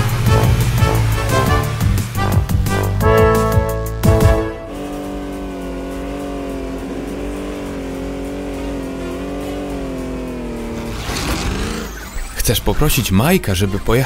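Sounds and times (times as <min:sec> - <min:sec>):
cartoon vehicle engine running: 0:00.0 - 0:14.0.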